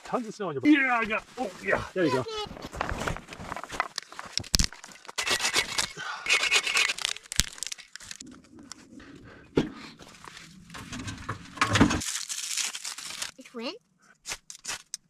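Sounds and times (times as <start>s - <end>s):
fabric rustling and crinkling: 0.8s - 5.1s.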